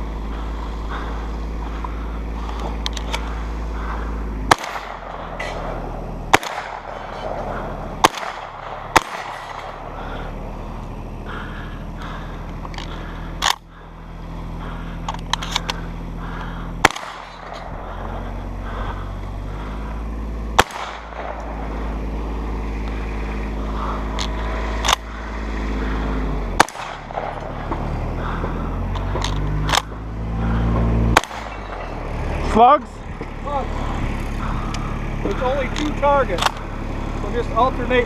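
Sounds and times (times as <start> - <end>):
utility vehicle engine running: 0.0 - 38.0
shotgun shots: 4.4 - 10.2, 16.8 - 17.8, 20.5 - 21.8, 26.6 - 27.8, 31.1 - 31.9.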